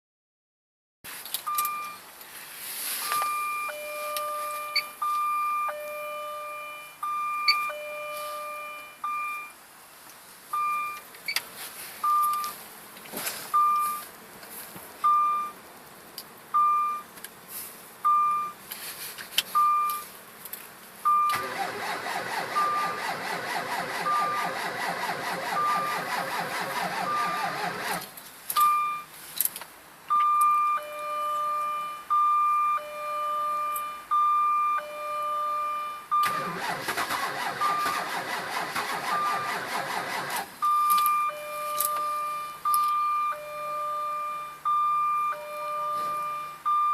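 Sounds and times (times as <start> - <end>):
car warning chime beeping: 3.1 - 9.6, 10.5 - 11.0, 12.0 - 12.6, 15.0 - 15.6, 16.6 - 17.1, 21.1 - 29.1, 30.1 - 46.9
car engine cranking: 21.3 - 28.2, 36.2 - 40.6.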